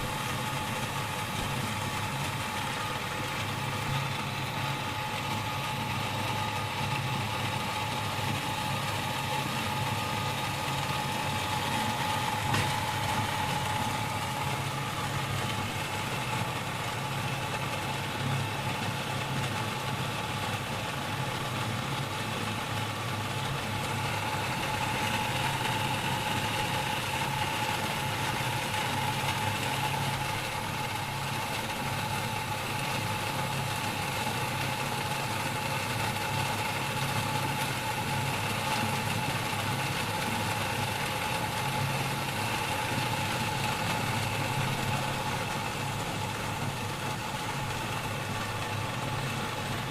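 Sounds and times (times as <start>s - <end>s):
water pump motor hum: 0.0s - 49.9s.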